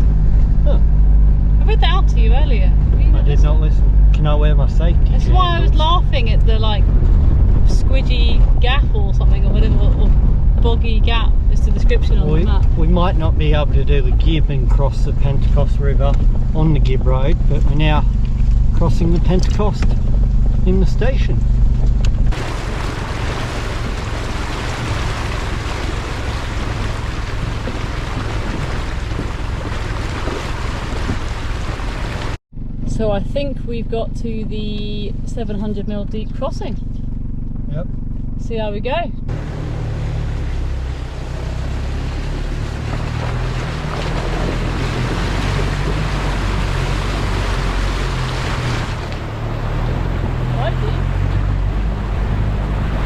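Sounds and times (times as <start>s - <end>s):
engine rumbling: 0.0s - 53.0s
wind: 0.0s - 53.0s
water rushing: 22.3s - 32.4s, 39.3s - 53.0s.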